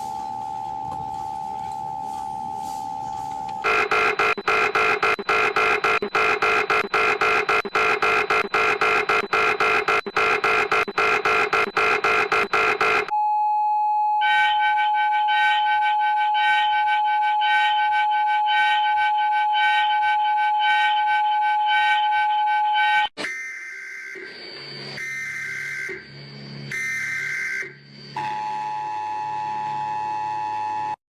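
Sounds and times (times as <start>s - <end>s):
fast pulsing alert tone: 3.6s - 13.1s
higher pulsing tone: 3.6s - 13.1s
steady beep tone: 3.6s - 13.3s, 23.2s - 30.4s.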